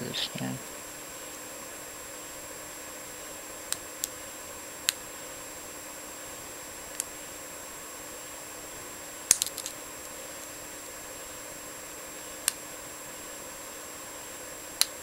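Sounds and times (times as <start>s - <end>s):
faint steady hiss: 0.0s - 15.0s
lock pick metallic clicks: 9.3s - 9.8s.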